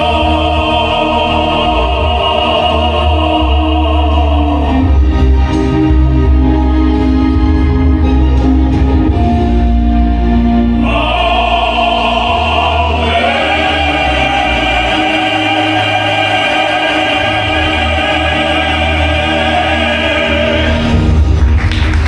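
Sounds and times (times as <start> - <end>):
choir singing held chords: 0.0 - 5.8, 10.4 - 21.4.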